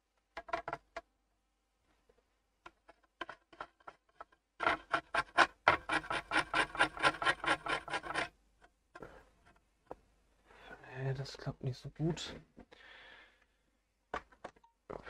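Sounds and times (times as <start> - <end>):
pen scrubbing circuit board: 4.6 - 8.3.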